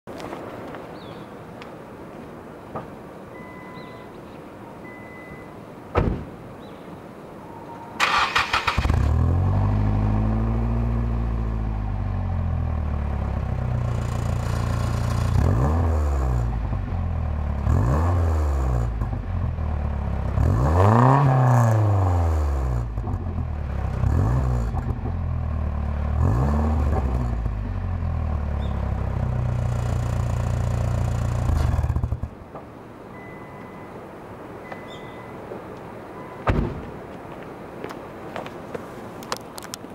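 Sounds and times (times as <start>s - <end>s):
car engine starting and idling: 8.0s - 32.5s.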